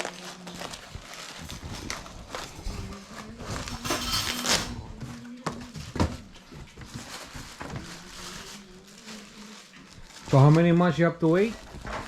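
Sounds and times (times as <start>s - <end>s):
rustling scrape: 0.0s - 12.0s
metal tools clinking and knocking: 3.8s - 4.7s.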